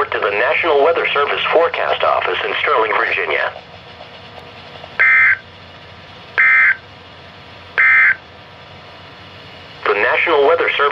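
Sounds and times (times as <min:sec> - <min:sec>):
radio hiss: 0:00.0 - 0:03.6, 0:09.8 - 0:10.9.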